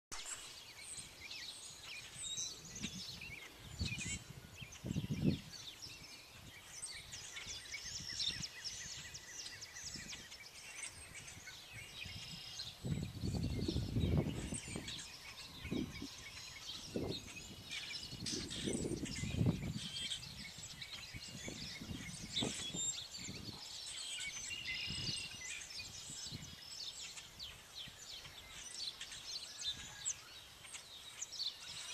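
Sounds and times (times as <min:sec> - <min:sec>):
birds singing and calling: 0:00.1 - 0:31.9.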